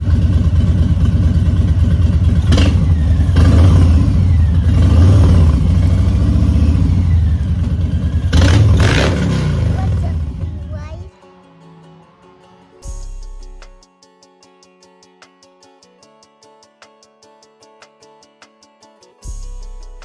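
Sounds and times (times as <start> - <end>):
motorcycle engine revving: 0.0 - 11.1.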